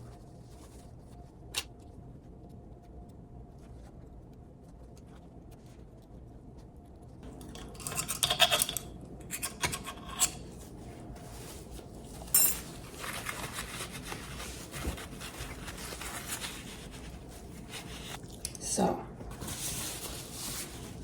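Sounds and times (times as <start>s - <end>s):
metal parts scraping and clinking: 7.4s - 10.4s, 12.2s - 13.8s.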